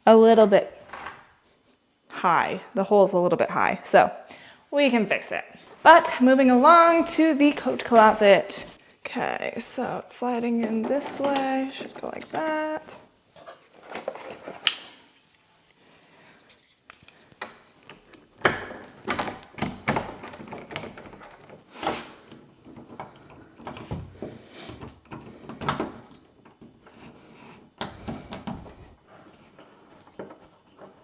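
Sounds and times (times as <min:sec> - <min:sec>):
door hardware clicking and knocking: 0:18.4 - 0:21.6.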